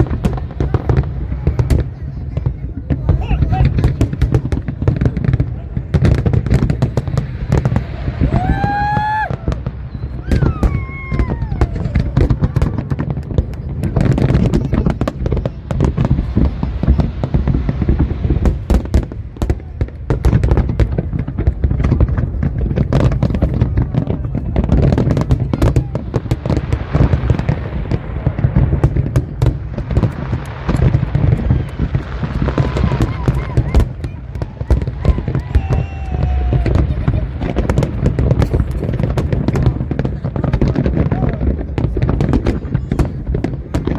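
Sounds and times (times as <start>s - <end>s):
fireworks bangs and crackles: 0.0s - 43.9s
fireworks whistling: 6.1s - 19.1s, 22.1s - 41.4s.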